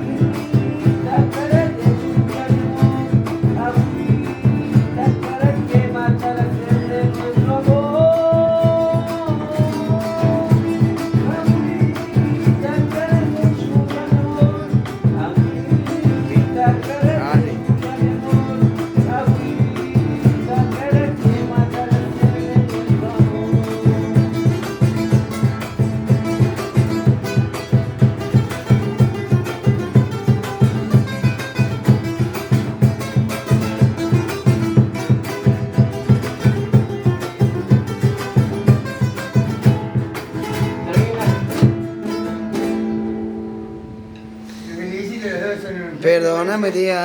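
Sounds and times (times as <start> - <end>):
person singing: 0.0 - 25.8
guitar playing steady beat: 0.0 - 47.0.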